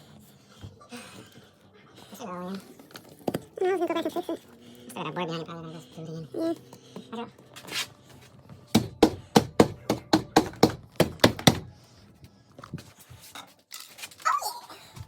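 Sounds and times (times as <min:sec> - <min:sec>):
hammer striking a wall: 0:08.7 - 0:11.7.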